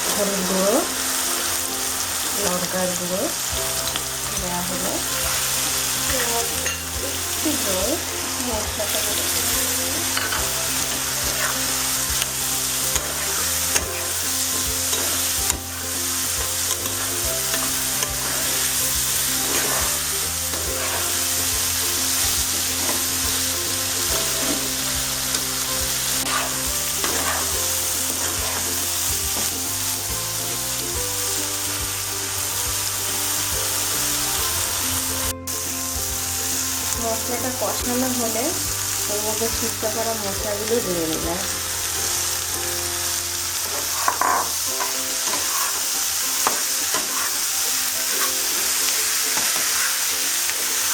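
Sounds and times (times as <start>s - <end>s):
chicken sizzling in oil: 0.0s - 50.9s
soft background music: 0.0s - 50.9s
spatula scraping pan: 0.0s - 50.9s.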